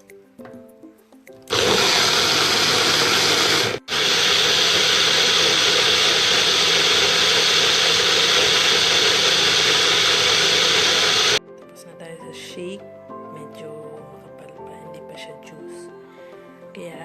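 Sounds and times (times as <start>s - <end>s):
electric blender running: 1.5s - 11.4s.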